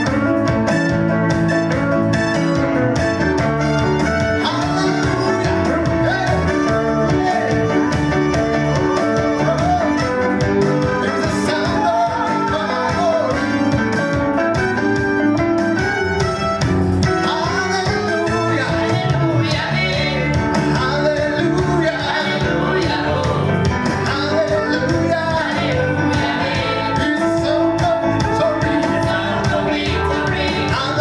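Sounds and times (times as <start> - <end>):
guitar and band accompaniment: 0.0 - 31.0
gospel singers: 4.4 - 14.0, 17.2 - 31.0.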